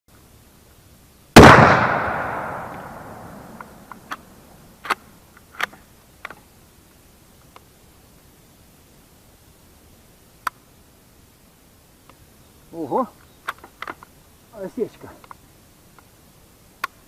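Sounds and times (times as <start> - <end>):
shotgun shot echoing: 1.4 - 4.4.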